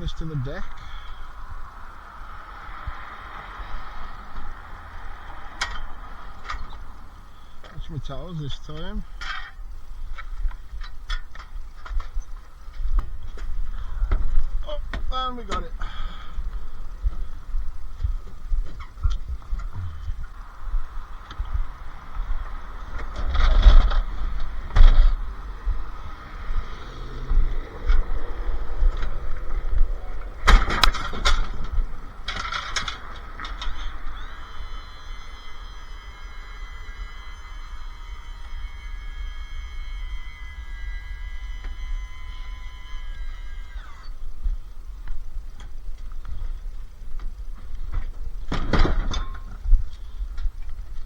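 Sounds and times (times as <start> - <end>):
steady low rumble: 0.0 - 36.3.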